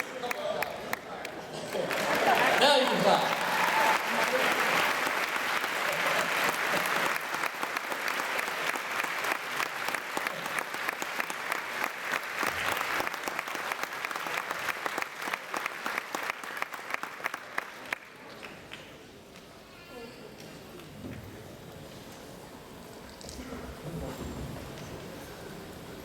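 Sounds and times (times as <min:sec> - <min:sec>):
audience applauding: 0:00.0 - 0:18.9.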